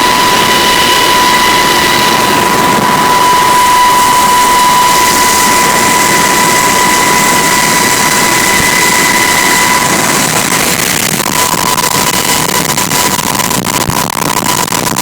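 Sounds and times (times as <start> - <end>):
helicopter turbine and rotor noise: 0.0 - 15.0
high-pitched whine: 0.0 - 15.0.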